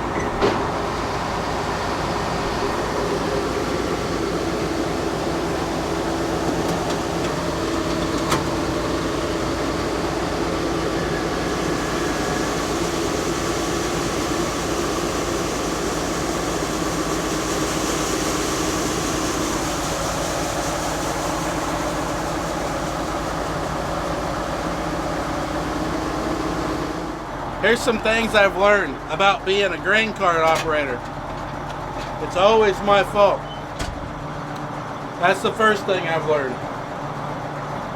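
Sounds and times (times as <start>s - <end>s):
tractor engine running under load: 0.0s - 37.9s.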